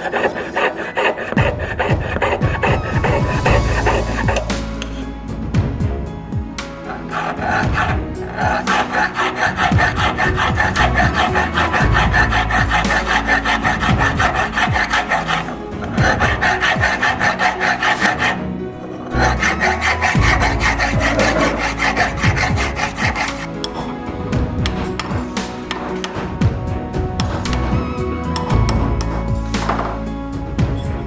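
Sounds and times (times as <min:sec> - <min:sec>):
file rasping on metal: 0:00.0 - 0:05.0, 0:06.8 - 0:23.6
background music: 0:00.0 - 0:31.0.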